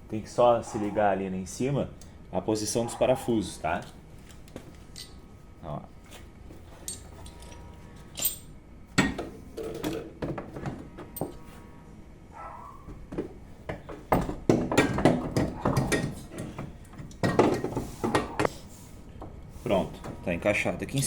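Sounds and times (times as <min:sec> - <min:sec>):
metal parts knocking and clinking: 0:04.9 - 0:05.2, 0:06.8 - 0:11.5, 0:13.1 - 0:18.5.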